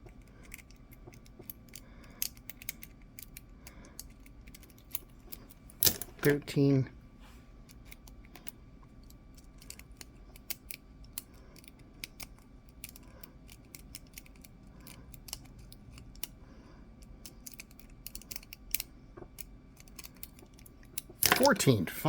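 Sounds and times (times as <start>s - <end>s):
lock pick clicking in padlock: 0.4s - 6.3s, 9.4s - 16.4s, 17.1s - 21.5s.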